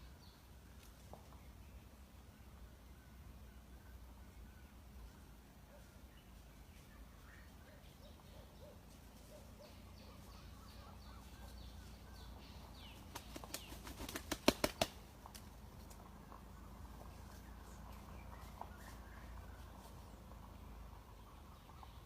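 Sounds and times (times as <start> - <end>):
faint bird chirps: 2.4 - 14.1
bird wings flapping: 13.0 - 15.5.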